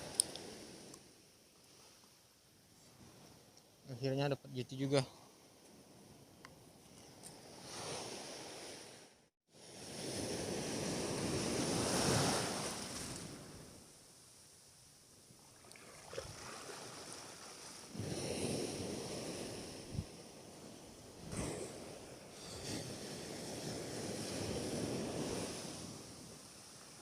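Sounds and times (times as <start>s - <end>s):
waves washing onto shore: 9.6s - 13.9s, 15.6s - 27.0s.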